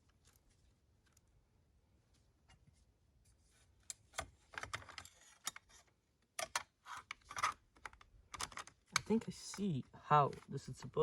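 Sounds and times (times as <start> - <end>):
plastic parts clicking and rattling: 3.9 - 9.7.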